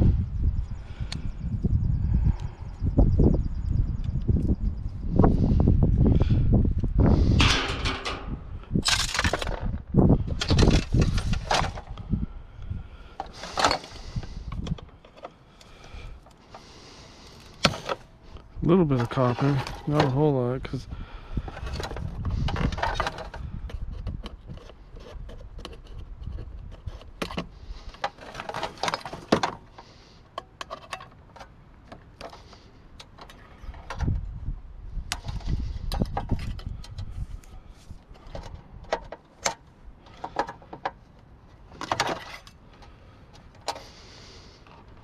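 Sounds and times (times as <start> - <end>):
metal and plastic parts clattering: 7.4 - 11.9, 13.2 - 16.7, 17.4 - 18.1, 18.9 - 20.3, 21.4 - 34.2, 38.0 - 44.0.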